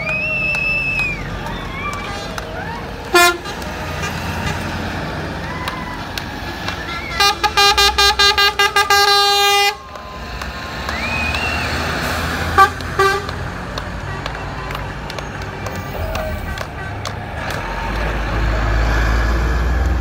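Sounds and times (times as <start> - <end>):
siren whoop: 0.0 - 3.0, 9.5 - 12.0
fire truck horns honking: 0.0 - 19.4
heavy vehicles rumbling: 0.0 - 20.0.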